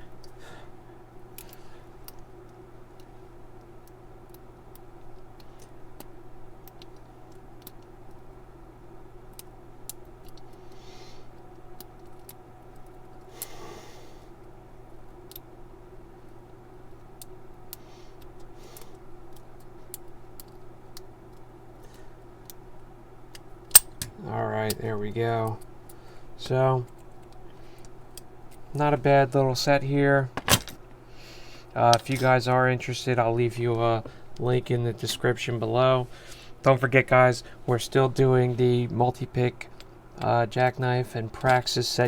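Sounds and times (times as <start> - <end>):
low electrical hum: 0.0 - 42.0
lock pick metal clicks: 23.3 - 24.8.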